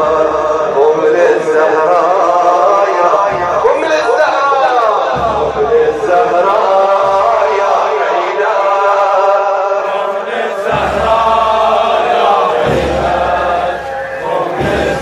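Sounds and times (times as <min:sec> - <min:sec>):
men chanting a lament: 0:00.0 - 0:15.0.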